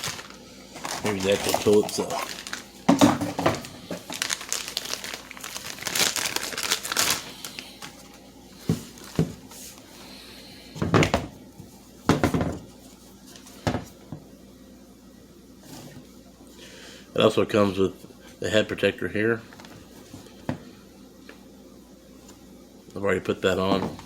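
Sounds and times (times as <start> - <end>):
packaging crinkling: 0.0 - 9.3.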